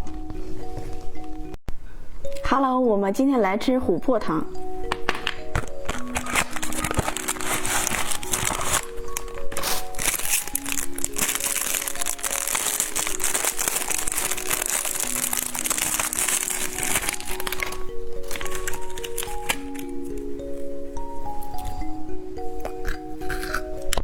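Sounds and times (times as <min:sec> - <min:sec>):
background music: 0:00.0 - 0:24.0
candy and packaging crinkling: 0:04.9 - 0:21.9.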